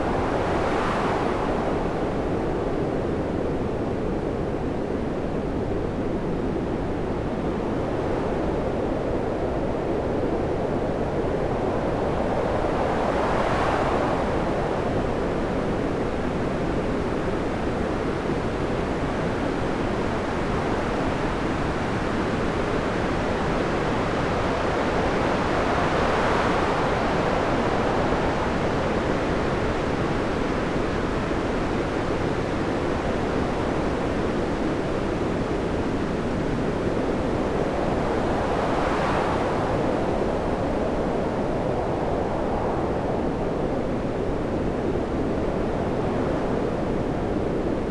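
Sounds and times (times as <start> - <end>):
rough sea waves and surf: 23.8 - 47.9.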